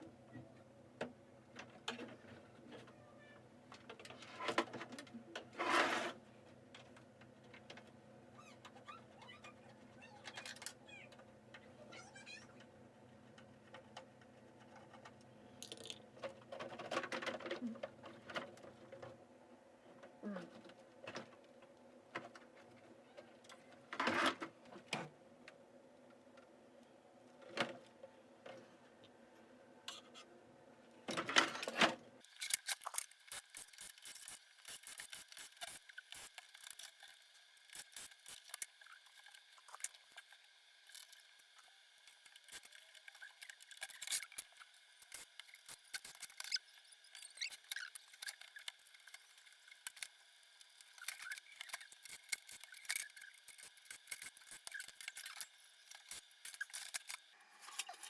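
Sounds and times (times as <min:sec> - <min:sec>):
projector parts clicking and rattling: 0:31.1 - 0:58.0.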